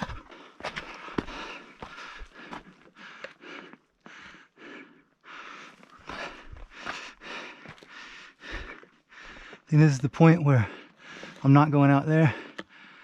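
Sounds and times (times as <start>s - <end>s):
boots clicking on loose rock: 0.0s - 3.4s, 5.8s - 9.6s
heavy breathing: 0.0s - 11.5s, 12.2s - 13.0s.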